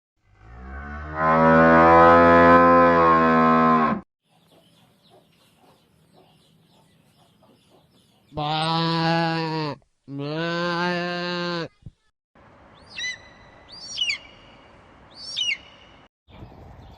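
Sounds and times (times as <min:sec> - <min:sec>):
cow mooing: 0:00.2 - 0:04.0, 0:08.5 - 0:11.7.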